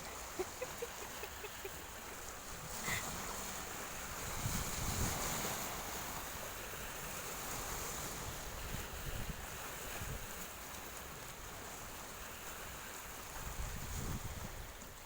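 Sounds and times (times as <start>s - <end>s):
sea waves washing: 0.0s - 15.0s
wind buffeting microphone: 4.0s - 5.6s, 13.4s - 14.9s.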